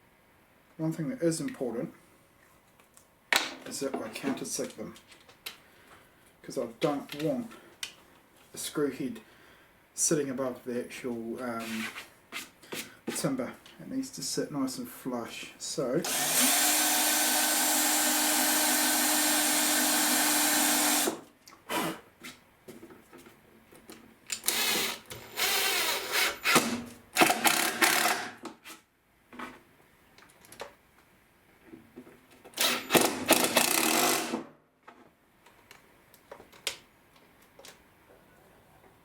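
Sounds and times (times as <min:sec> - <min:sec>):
power drill drilling timber: 0:16.0 - 0:21.2, 0:24.4 - 0:28.3, 0:32.6 - 0:34.4
knocks and handling sounds: 0:22.2 - 0:24.4, 0:34.8 - 0:39.0.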